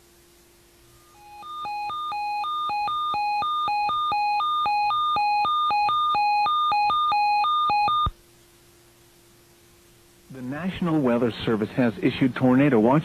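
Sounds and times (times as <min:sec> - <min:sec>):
alternating low and high alert beeps: 0:01.1 - 0:08.1.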